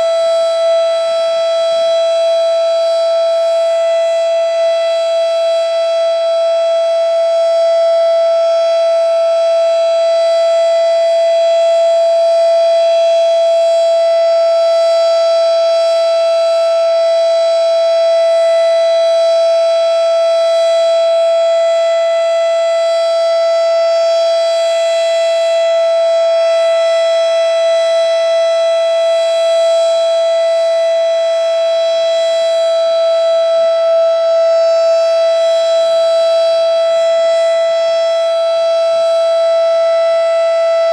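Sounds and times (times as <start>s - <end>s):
mechanical warning siren wailing: 0.0s - 40.9s.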